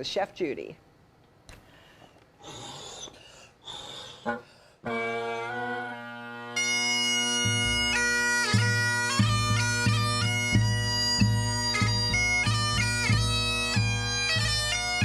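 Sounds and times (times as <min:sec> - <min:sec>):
bagpipes playing: 0:04.8 - 0:15.0.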